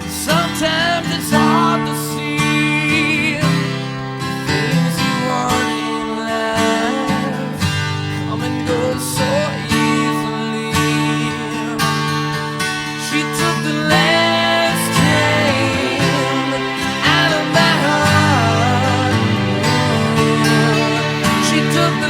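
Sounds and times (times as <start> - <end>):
strummed acoustic guitar: 0.0 - 22.0
sustained instrumental notes: 14.0 - 22.0.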